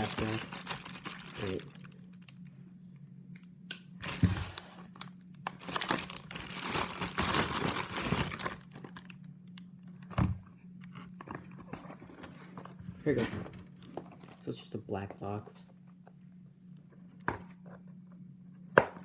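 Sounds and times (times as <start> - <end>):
packaging crinkling and tearing: 0.0 - 2.5, 4.0 - 9.7.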